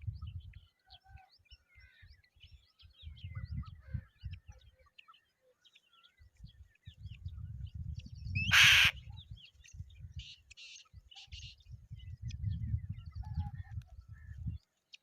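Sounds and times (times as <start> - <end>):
wind rumble on microphone: 0.0 - 0.8, 2.0 - 4.8, 6.2 - 14.6
harsh raspy bird calls: 8.4 - 9.1.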